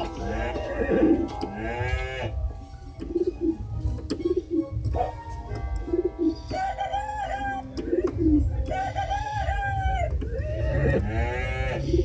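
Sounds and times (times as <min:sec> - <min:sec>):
synthesized dove cooing: 0:00.0 - 0:12.0.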